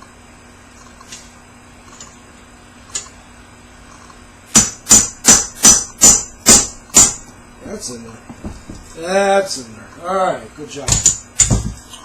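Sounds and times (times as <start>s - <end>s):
hammer striking metal: 4.5s - 7.2s.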